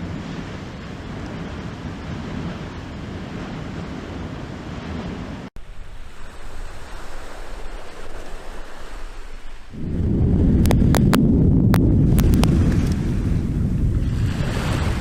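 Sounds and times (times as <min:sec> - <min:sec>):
steady low rushing noise: 0:05.4 - 0:15.0.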